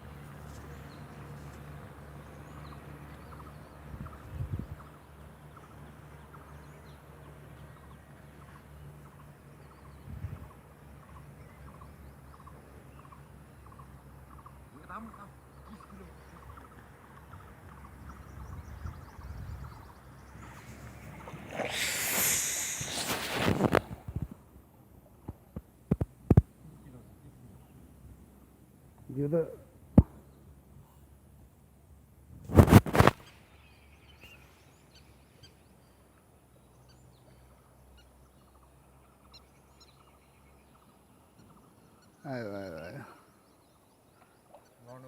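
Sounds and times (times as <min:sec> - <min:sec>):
low steady background noise: 0:00.0 - 0:22.9, 0:23.7 - 0:32.4, 0:33.1 - 0:45.0
water splashing: 0:20.3 - 0:24.2
loud rushing burst: 0:20.4 - 0:24.0
faint bird chirps: 0:33.2 - 0:45.0.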